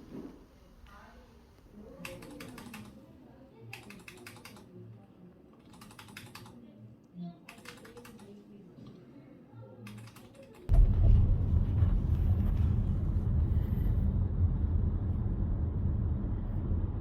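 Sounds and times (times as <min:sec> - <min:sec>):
steady low rumbling: 0:10.7 - 0:17.0.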